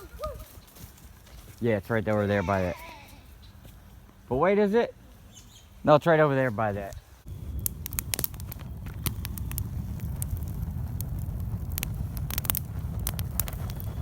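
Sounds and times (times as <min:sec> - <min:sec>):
low rumble of fire: 0:06.3 - 0:14.0
wood fire crackling and popping: 0:06.6 - 0:14.0.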